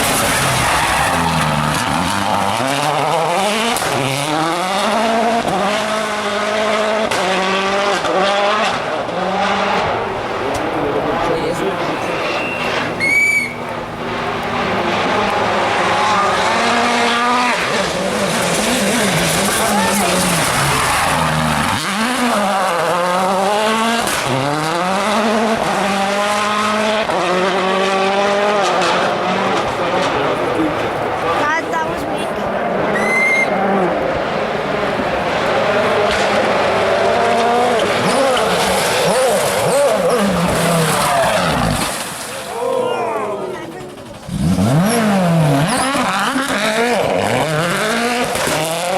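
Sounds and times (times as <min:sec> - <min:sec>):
car engine accelerating: 0:00.0 - 0:48.9
shrill whistle: 0:12.3 - 0:13.6, 0:33.0 - 0:33.6.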